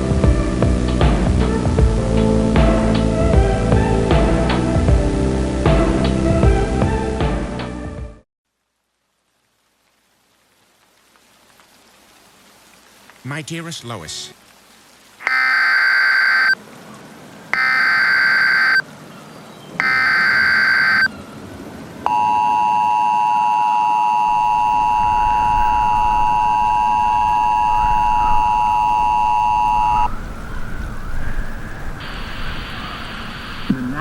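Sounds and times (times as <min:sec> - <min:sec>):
screeching data bursts: 0:15.2 - 0:16.6, 0:17.6 - 0:18.8, 0:19.8 - 0:21.1
steady two-tone alert signal: 0:15.3 - 0:16.6, 0:17.6 - 0:18.8, 0:19.8 - 0:21.1.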